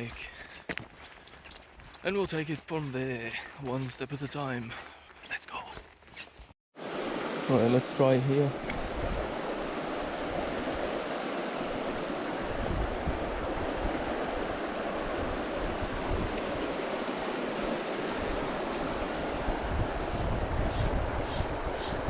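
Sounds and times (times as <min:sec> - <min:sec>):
river water flowing: 0:06.8 - 0:22.0
wind buffeting microphone: 0:08.6 - 0:22.0.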